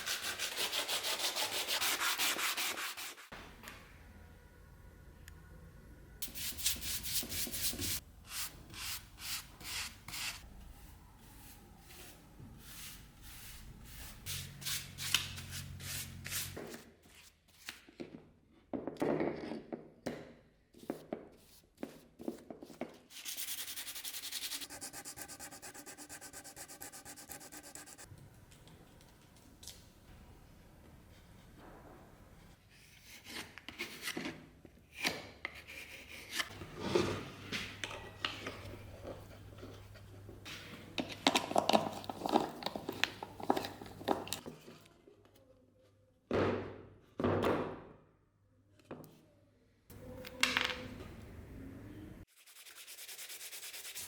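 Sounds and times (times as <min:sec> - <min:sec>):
sandpaper rubbing over wood: 0:00.0 - 0:03.3, 0:23.1 - 0:28.1, 0:52.3 - 0:54.0.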